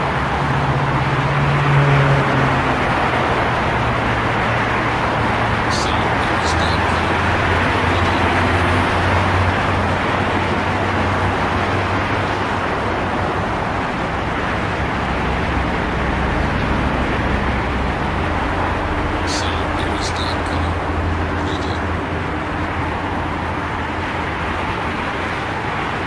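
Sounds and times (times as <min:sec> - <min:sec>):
highway traffic: 0:00.0 - 0:26.0
low engine drone: 0:05.2 - 0:11.1, 0:18.1 - 0:23.9.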